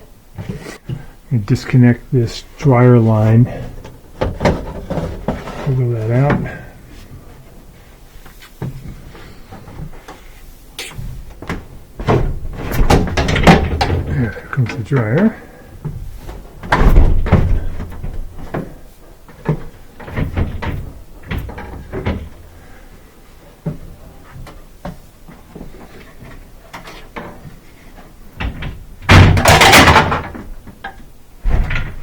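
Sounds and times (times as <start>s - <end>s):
dryer knocks and thumps: 11.2s - 14.3s, 15.8s - 18.8s, 28.4s - 30.5s.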